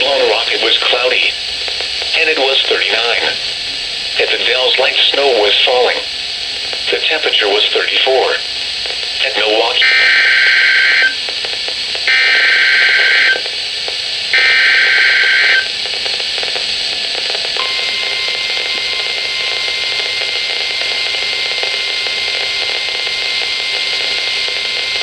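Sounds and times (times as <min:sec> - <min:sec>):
radio hiss: 0:00.0 - 0:25.0
steady warning alarm tone: 0:00.0 - 0:25.0
screechy warbling data bursts: 0:09.2 - 0:11.2, 0:12.1 - 0:13.6, 0:14.4 - 0:15.7.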